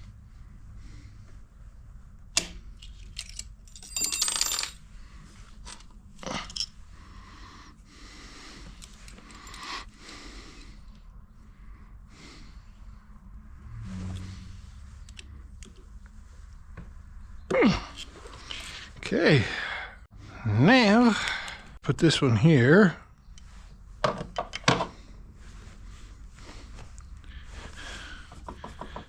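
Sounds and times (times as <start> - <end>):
jingling metallic rattle: 2.8 - 4.8
metal parts clinking: 2.8 - 4.8, 5.5 - 6.9, 8.8 - 9.9, 17.9 - 18.9.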